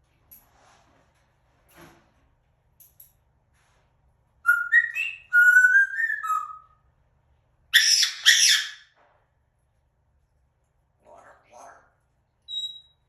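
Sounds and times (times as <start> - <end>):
parrot squawks: 7.8 - 8.9.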